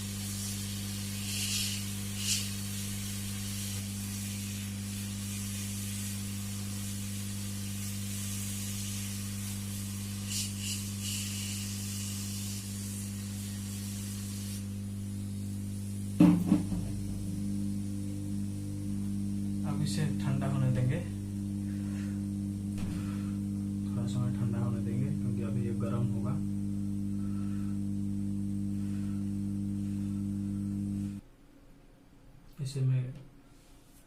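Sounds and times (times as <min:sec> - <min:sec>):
hot air gun hissing: 0:00.0 - 0:18.4
low steady hum: 0:14.6 - 0:32.4
sharp knock: 0:16.2 - 0:17.0.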